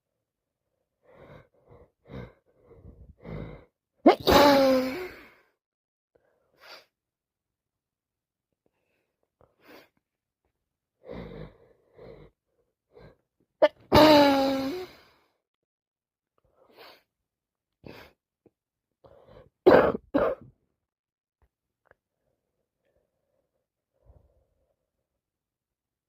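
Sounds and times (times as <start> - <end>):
person sneezing: 4.1 - 5.2, 13.6 - 14.9.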